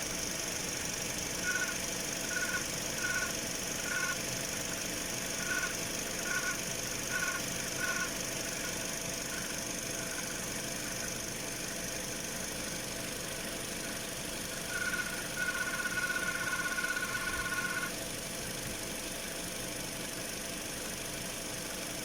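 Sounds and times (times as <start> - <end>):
high-pitched alternator whine: 0.0 - 22.0
long steady tone: 1.4 - 4.2, 5.2 - 11.1, 14.5 - 18.0.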